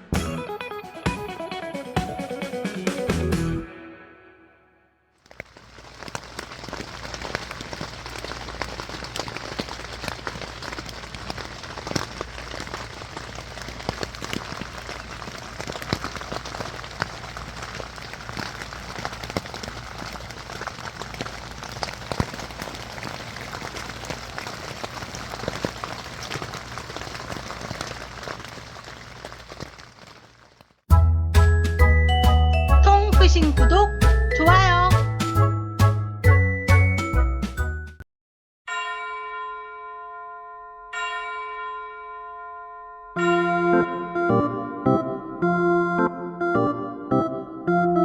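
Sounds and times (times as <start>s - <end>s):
raindrops clicking on a surface: 5.2s - 30.8s, 32.9s - 35.1s
steady rain falling: 5.2s - 30.8s.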